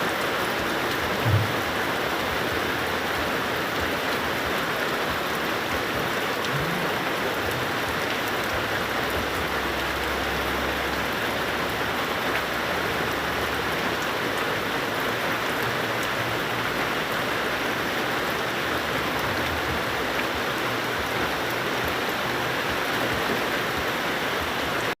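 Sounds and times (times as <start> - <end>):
heavy rain falling: 0.0 - 25.0.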